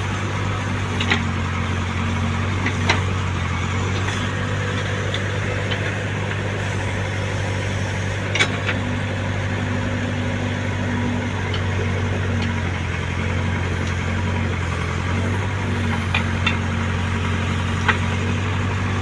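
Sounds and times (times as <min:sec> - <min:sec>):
heavy diesel engine idling: 0:00.0 - 0:19.0.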